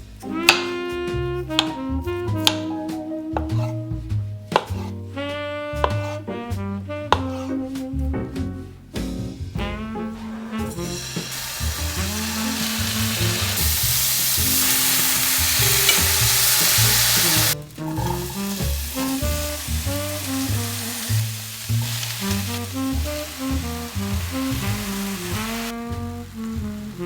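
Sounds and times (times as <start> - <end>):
background music: 0.0 - 27.0
food sizzling in a pan: 10.8 - 27.0.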